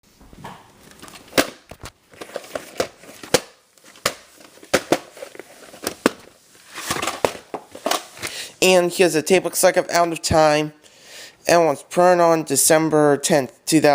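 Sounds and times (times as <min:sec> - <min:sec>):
plastic case clicks and crackles: 0:00.9 - 0:06.3.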